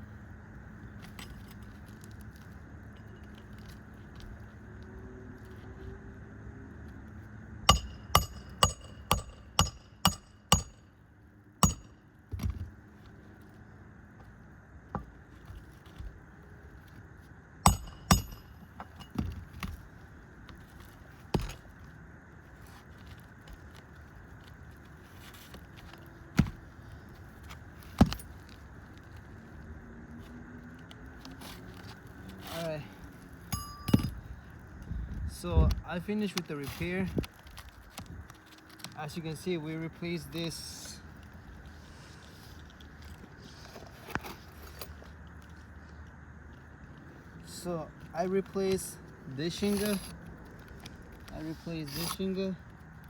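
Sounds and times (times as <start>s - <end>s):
hammer striking roofing nails: 7.7s - 10.8s, 11.6s - 12.6s, 17.7s - 19.7s.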